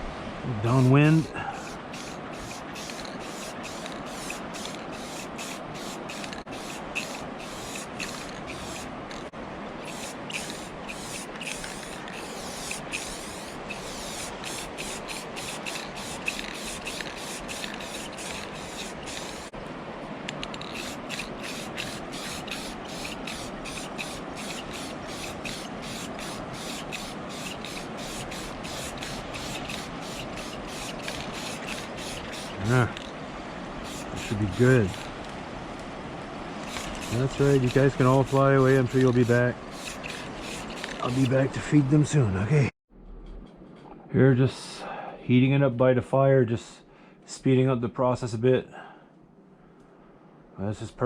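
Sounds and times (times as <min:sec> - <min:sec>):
paint spraying hiss: 0:01.6 - 0:08.9, 0:09.8 - 0:19.5, 0:20.6 - 0:33.1, 0:33.8 - 0:35.1, 0:36.6 - 0:41.3.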